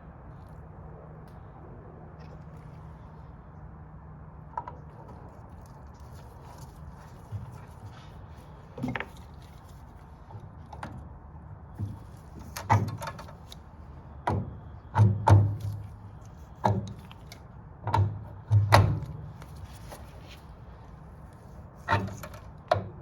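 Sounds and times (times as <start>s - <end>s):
tools knocking and clunking: 11.8s - 13.6s, 14.2s - 15.9s, 16.6s - 17.1s, 17.9s - 19.5s.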